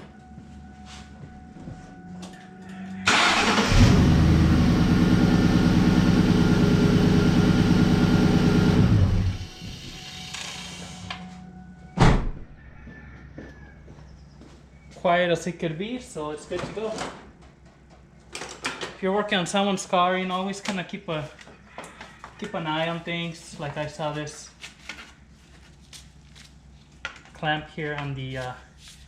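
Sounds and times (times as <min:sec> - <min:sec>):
car engine cranking and running: 0:03.0 - 0:10.3.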